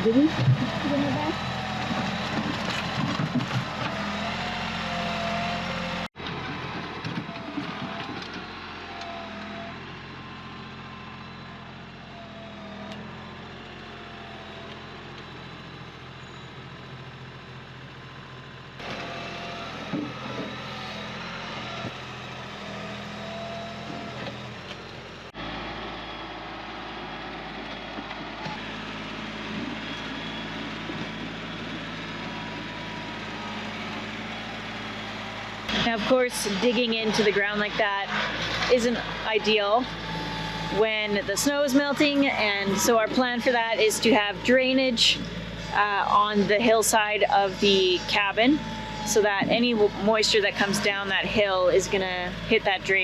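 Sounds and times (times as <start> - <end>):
heavy machinery engine running: 0.0 - 53.0.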